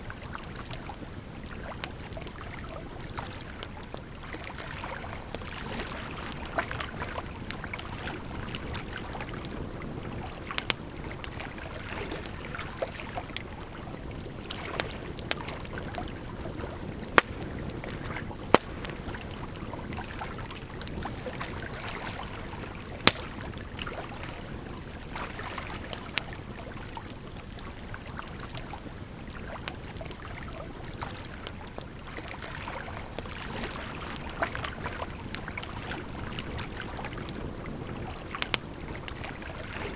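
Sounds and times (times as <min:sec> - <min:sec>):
wood fire crackling: 0:05.1 - 0:32.0, 0:34.2 - 0:39.9
firewood popping: 0:14.2 - 0:19.4, 0:22.8 - 0:23.8.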